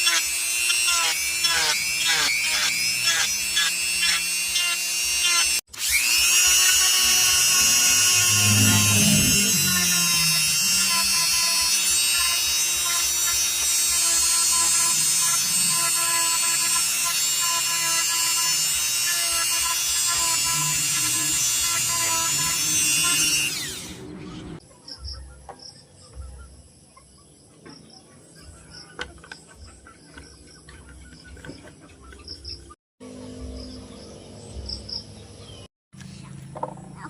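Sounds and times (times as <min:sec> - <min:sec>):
power tool motor whining: 0:00.0 - 0:24.4.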